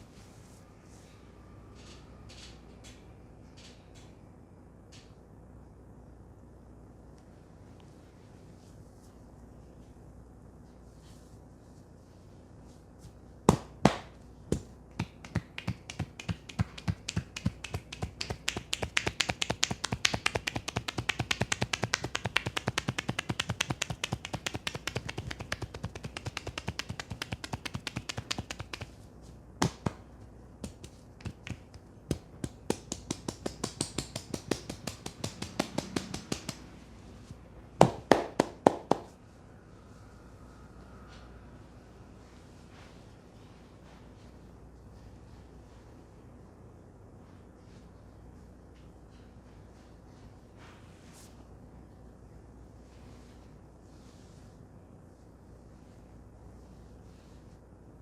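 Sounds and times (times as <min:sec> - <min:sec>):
hands slapping and tapping head: 0:13.5 - 0:29.0, 0:29.6 - 0:36.7, 0:37.8 - 0:39.1.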